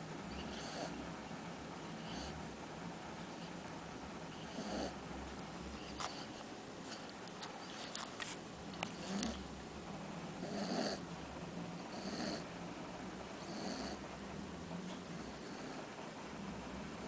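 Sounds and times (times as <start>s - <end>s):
puppy snoring: 0.3s - 1.0s, 1.9s - 2.6s, 4.3s - 5.1s, 5.7s - 8.0s, 8.8s - 9.5s, 10.3s - 11.1s, 11.8s - 12.5s, 13.4s - 14.1s, 14.8s - 16.0s.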